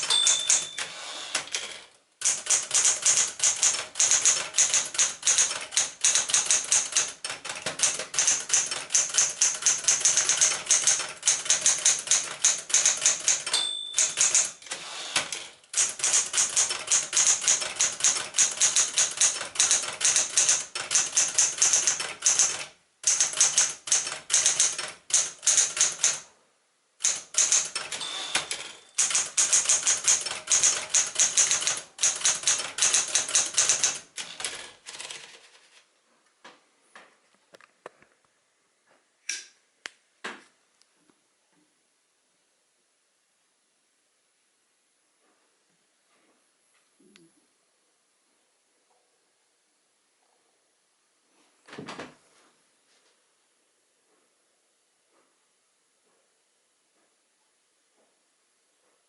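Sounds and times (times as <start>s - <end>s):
typewriter bell ping: 0.0s - 1.4s, 7.8s - 14.6s, 27.1s - 34.5s
typewriter keystroke clacks: 0.0s - 26.3s, 27.0s - 35.5s.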